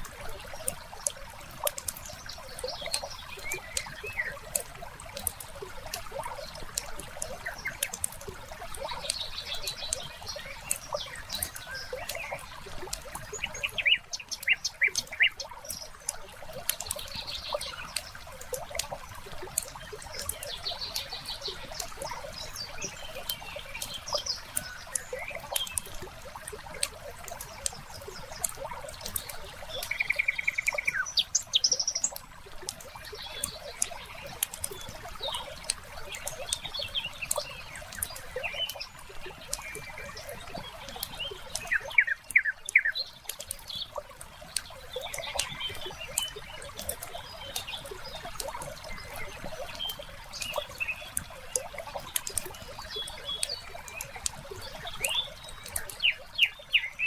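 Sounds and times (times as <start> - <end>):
birds chirping: 0.0 - 57.0
water trickling: 0.0 - 57.0
wood fire crackling and popping: 14.1 - 30.0, 30.7 - 56.2.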